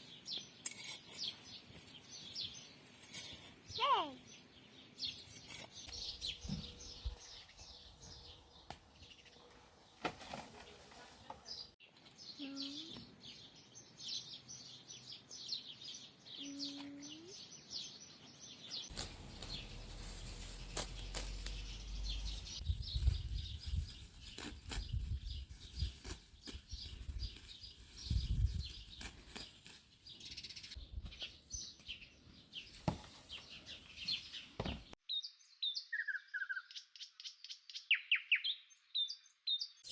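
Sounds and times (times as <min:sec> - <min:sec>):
small birds chirping: 0:00.0 - 0:39.9
handling knocks and rustles: 0:08.7 - 0:11.7, 0:18.9 - 0:25.2, 0:32.7 - 0:35.0
low rumbling: 0:19.0 - 0:23.4.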